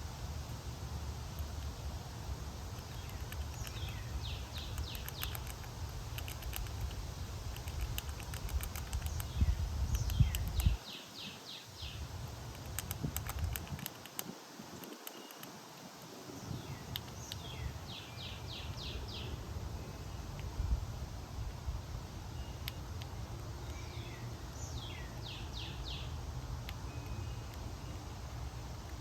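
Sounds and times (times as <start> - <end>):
songbird singing: 0.0 - 29.0
sharp clicks: 2.8 - 3.9, 4.5 - 10.8, 12.5 - 15.5, 16.9 - 17.4.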